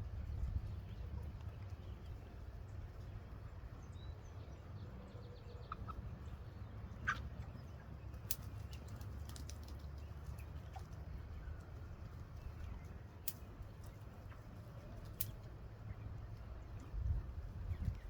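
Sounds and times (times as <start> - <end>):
faint chick peeps: 0.0 - 18.0
low steady rumble: 0.0 - 18.0
soft clicks and rustles: 8.2 - 14.0.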